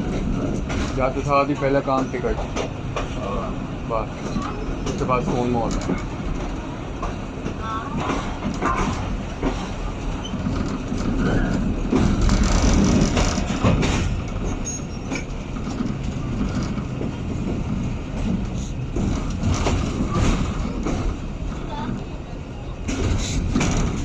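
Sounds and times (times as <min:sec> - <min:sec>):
train wheels rumbling on rail: 0:00.0 - 0:24.0
wheels knocking over rail joints: 0:04.2 - 0:21.3.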